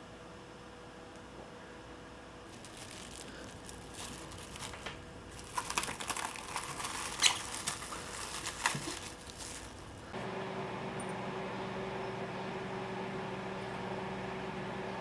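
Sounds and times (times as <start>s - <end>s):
crinkling with light clicks: 2.5s - 10.2s.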